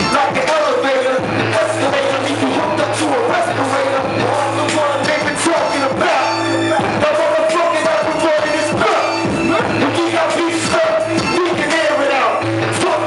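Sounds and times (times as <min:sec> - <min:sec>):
hip hop beat: 0:00.0 - 0:13.0
person rapping: 0:00.0 - 0:13.0.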